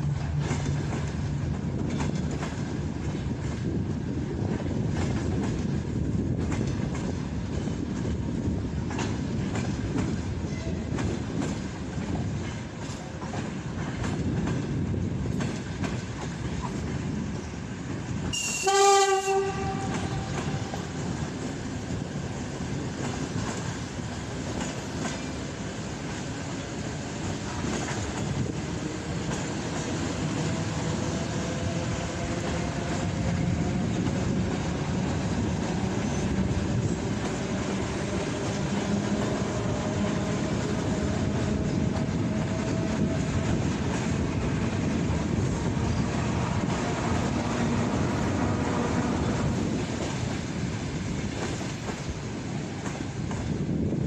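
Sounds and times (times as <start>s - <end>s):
train wheels rumbling on rails: 0.0s - 54.0s
train horn blast: 18.3s - 21.0s.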